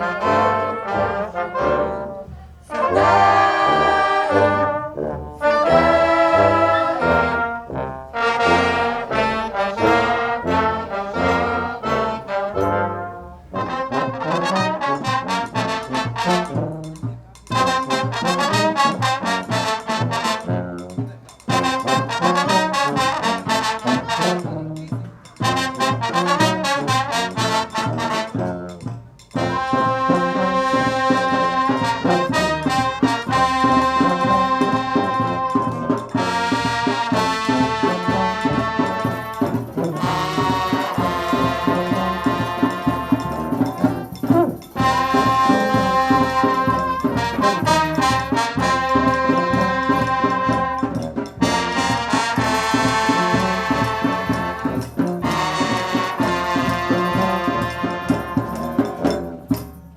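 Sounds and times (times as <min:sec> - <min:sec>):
brass instruments playing a tune: 0:00.0 - 0:59.9.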